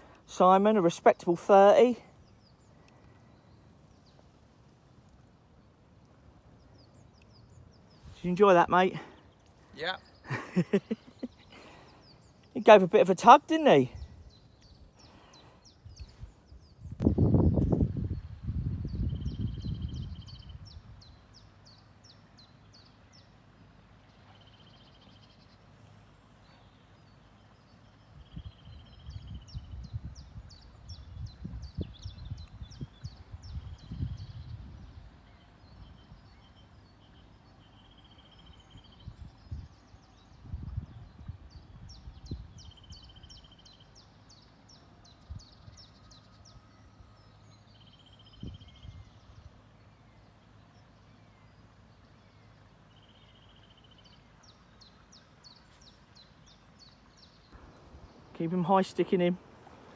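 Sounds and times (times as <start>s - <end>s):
songbird singing: 0.0s - 59.9s.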